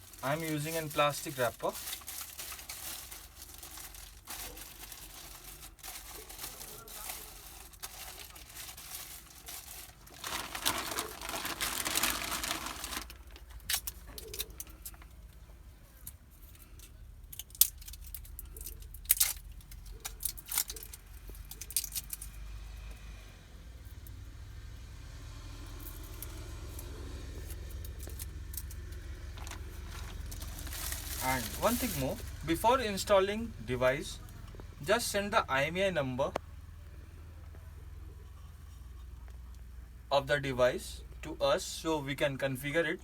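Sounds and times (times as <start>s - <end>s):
plastic wrapper crinkling: 0.0s - 15.3s, 16.0s - 22.4s, 27.4s - 32.7s
low steady rumble: 0.0s - 43.0s.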